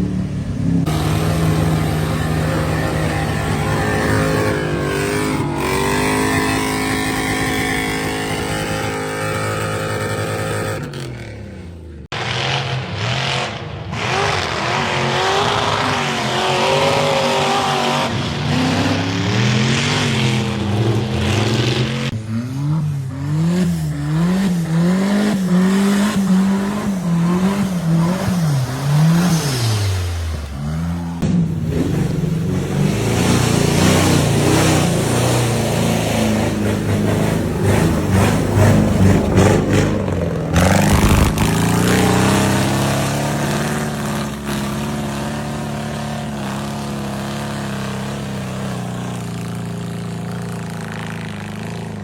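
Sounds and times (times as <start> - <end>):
off-road engines revving: 0.0 - 52.0.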